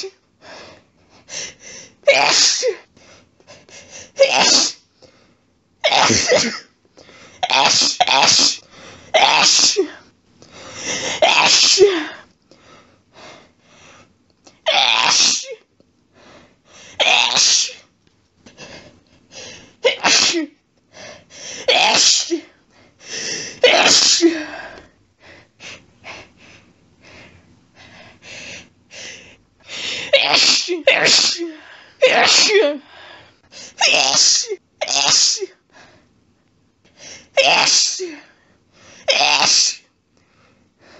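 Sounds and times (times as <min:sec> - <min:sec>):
woman sneezing: 0:02.1 - 0:02.9, 0:04.2 - 0:04.8, 0:05.8 - 0:06.6, 0:07.4 - 0:08.6, 0:09.2 - 0:10.0, 0:11.2 - 0:12.1, 0:14.7 - 0:15.6, 0:17.0 - 0:17.9, 0:19.8 - 0:20.6, 0:21.6 - 0:22.5, 0:23.6 - 0:24.5, 0:30.1 - 0:32.8, 0:33.8 - 0:35.6, 0:37.4 - 0:38.3, 0:39.1 - 0:39.9.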